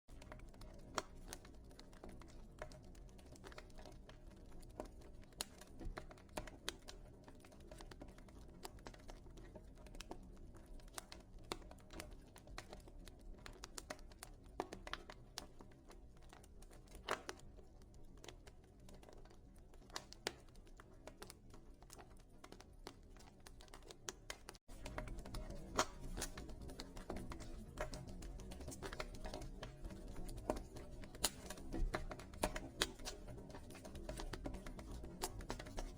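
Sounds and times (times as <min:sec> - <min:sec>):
wood fire crackling and popping: 0:00.1 - 0:35.9.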